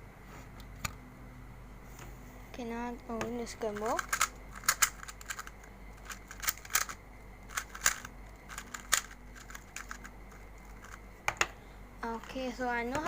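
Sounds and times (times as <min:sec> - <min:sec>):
puzzle cube clicking: 0:03.7 - 0:10.1.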